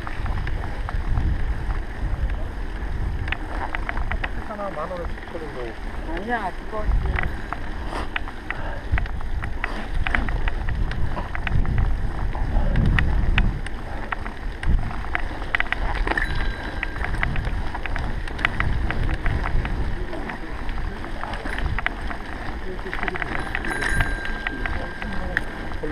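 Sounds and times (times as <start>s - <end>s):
wind buffeting microphone: 0.0s - 25.9s
sharp clicks and ticks: 3.1s - 25.9s.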